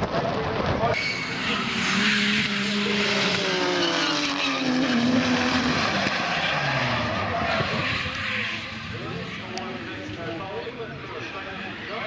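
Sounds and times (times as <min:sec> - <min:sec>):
car engine at high revs: 0:00.0 - 0:12.0
tyres squealing and skidding: 0:00.9 - 0:09.6.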